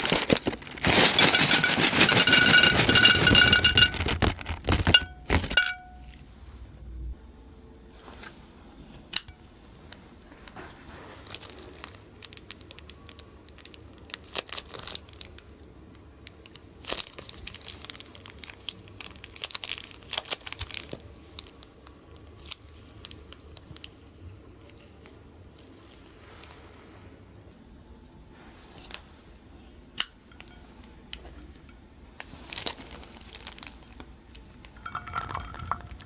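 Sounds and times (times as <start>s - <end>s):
slime crinkling and crackling: 0.0s - 5.6s.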